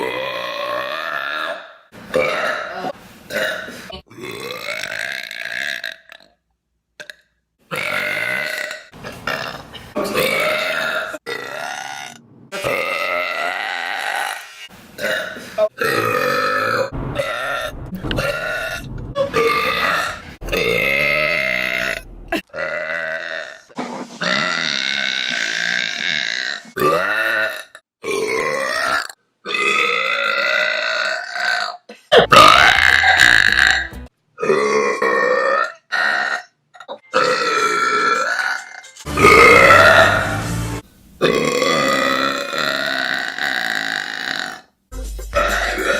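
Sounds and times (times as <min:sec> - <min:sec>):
woman burping: 0:00.0 - 0:06.0, 0:07.8 - 0:14.3, 0:19.2 - 0:23.6, 0:25.8 - 0:38.6.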